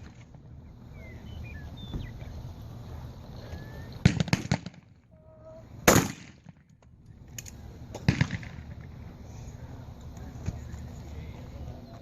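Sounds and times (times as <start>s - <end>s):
loud shotgun shots with echo: 4.0s - 4.8s, 5.8s - 6.5s, 8.1s - 8.6s
faint distant shotgun shots: 4.0s - 5.0s, 5.8s - 6.6s, 8.0s - 8.8s.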